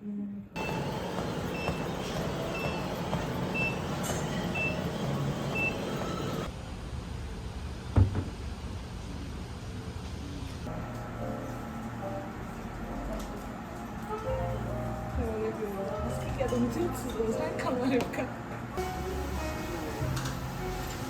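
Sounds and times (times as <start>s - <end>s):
reversing alarm beeping: 0.6s - 6.5s
traffic noise: 0.6s - 10.8s
thump: 8.0s - 8.4s.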